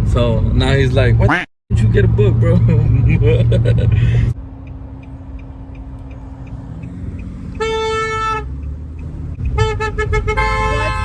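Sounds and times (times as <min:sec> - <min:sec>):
road rumble: 0:00.0 - 0:11.0
car horn honking: 0:06.6 - 0:11.0.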